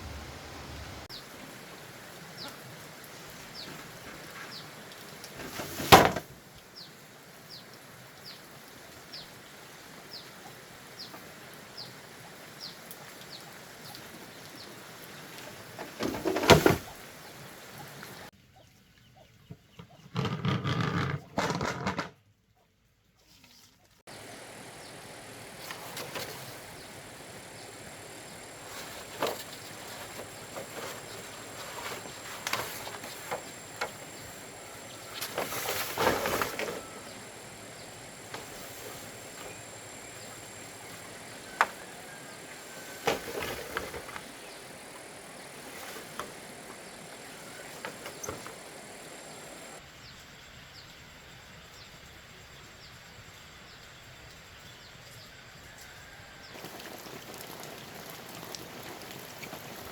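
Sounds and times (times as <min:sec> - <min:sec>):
muffled low rumbling: 0:00.0 - 0:01.1
outdoor hiss: 0:00.0 - 0:18.4, 0:24.0 - 0:59.9.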